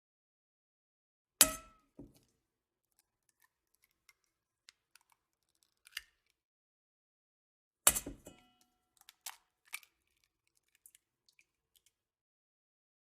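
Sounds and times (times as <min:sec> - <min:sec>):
eggshell cracking: 0:02.9 - 0:06.4, 0:08.9 - 0:12.0.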